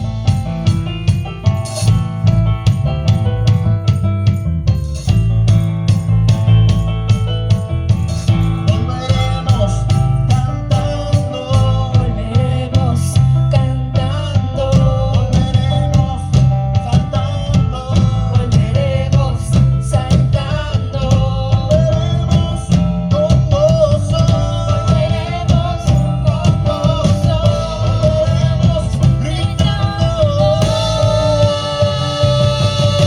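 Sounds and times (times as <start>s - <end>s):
guitar: 0.0s - 33.0s
steady drum beat: 0.0s - 33.0s
person singing: 8.7s - 33.0s.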